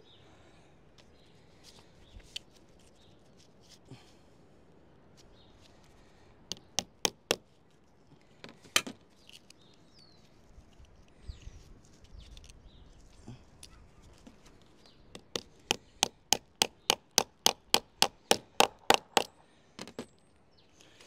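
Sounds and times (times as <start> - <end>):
faint bird chirps: 9.2 - 15.1.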